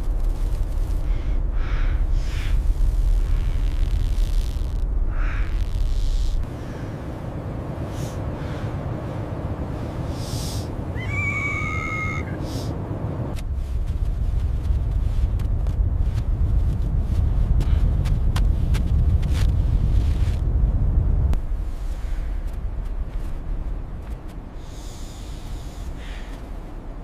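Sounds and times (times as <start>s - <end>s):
blizzard wind rumbling: 0.0s - 27.0s
high whistling tone: 11.0s - 12.4s.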